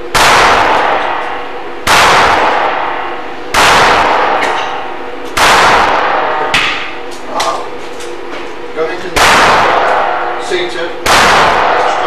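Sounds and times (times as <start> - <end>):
pistol shots: 0.1 - 7.0, 9.1 - 10.4, 11.0 - 12.0.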